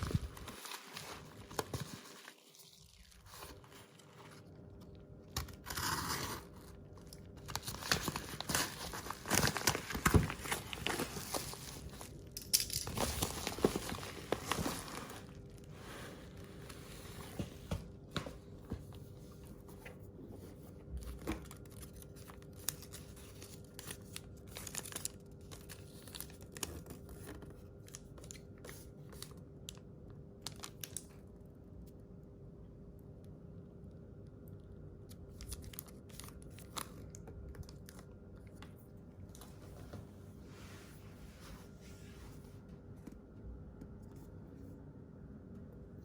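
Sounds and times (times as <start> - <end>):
packaging rustling and crinkling: 0.0 - 4.8, 5.4 - 29.4
faint steady hum: 0.0 - 46.0.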